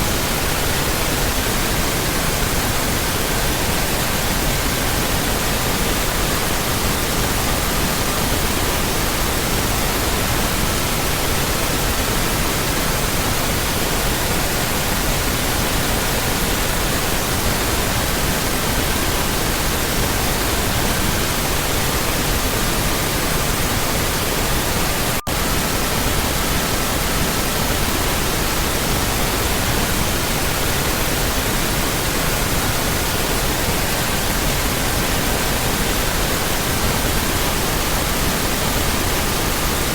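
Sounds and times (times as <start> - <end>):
faint pure sine tones: 0.0 - 39.9.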